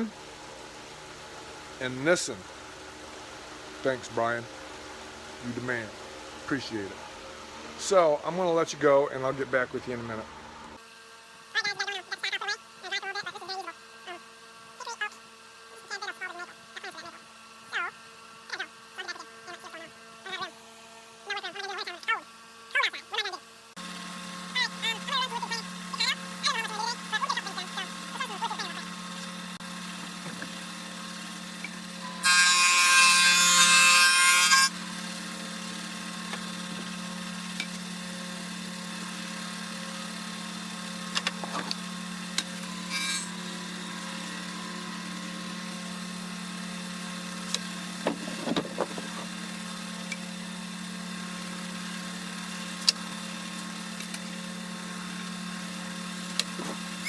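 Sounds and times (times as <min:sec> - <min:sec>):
power tool whining: 0:18.4 - 0:57.0.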